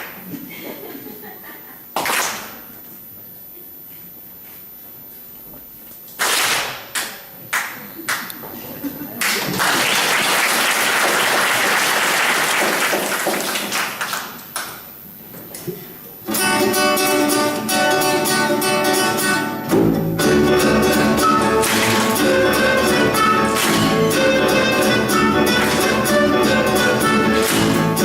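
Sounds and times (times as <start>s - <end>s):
hand clapping: 2.0s - 2.6s, 6.2s - 8.4s, 9.2s - 14.8s, 21.6s - 24.2s, 25.5s - 28.0s
plucked guitar: 16.2s - 28.0s
low bass notes: 19.7s - 28.0s.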